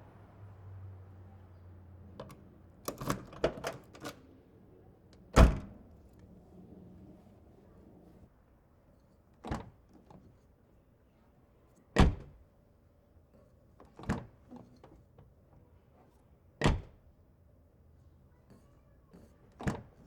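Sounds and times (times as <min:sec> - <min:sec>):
car door slamming: 0:05.4 - 0:05.8.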